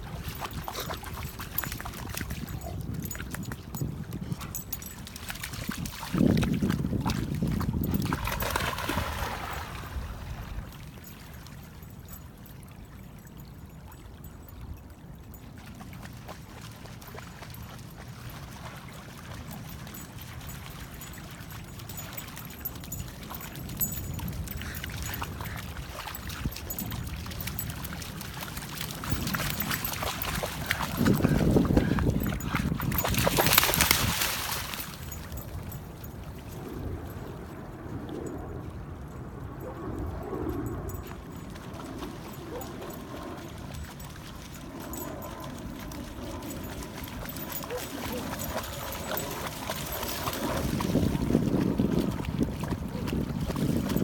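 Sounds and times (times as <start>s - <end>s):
small waves lapping: 4.9s - 13.2s, 15.5s - 36.5s, 41.5s - 54.0s.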